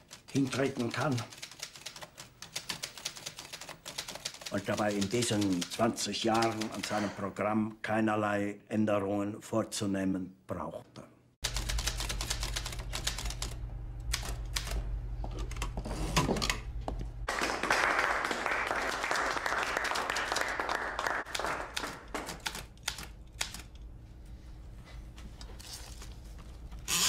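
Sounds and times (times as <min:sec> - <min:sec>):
steady low hum: 0:11.4 - 0:17.3, 0:22.0 - 0:26.9.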